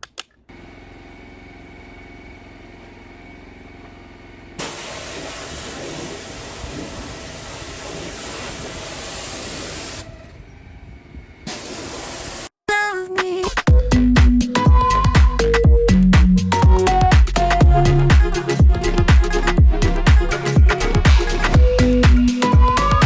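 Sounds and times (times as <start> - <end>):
pressure washer engine running: 0.5 - 12.5
high-pressure water spray hissing: 4.6 - 10.0, 11.5 - 12.5.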